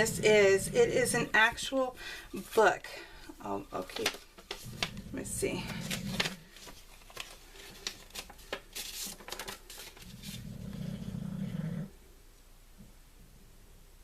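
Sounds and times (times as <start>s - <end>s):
low hum of a voice: 0.0s - 1.9s, 4.9s - 6.3s
paper and card rustling: 3.5s - 10.5s.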